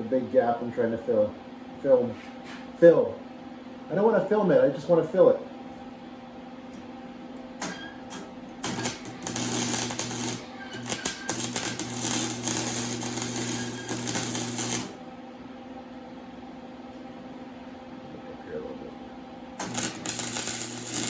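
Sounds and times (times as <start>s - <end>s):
steady electrical hum: 0.0s - 21.0s
arc welder crackling: 7.5s - 15.1s, 19.6s - 21.0s.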